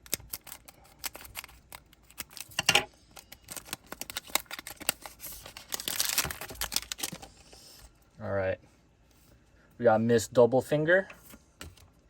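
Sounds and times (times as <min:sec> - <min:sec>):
cards clicking and rustling: 0:00.0 - 0:02.8
foil wrapper crinkling: 0:00.0 - 0:07.3.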